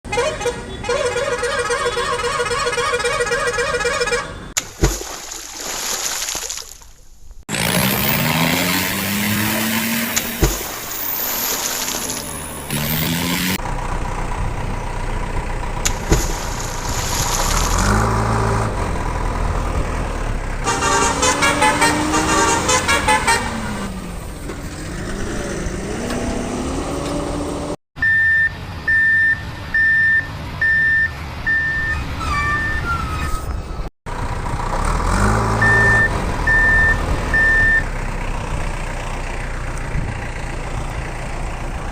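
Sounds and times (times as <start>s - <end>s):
truck engine running: 7.5s - 25.2s, 32.6s - 41.9s
gliding horn-like tones: 20.7s - 23.8s
reversing beeper: 28.0s - 33.9s, 35.6s - 37.9s.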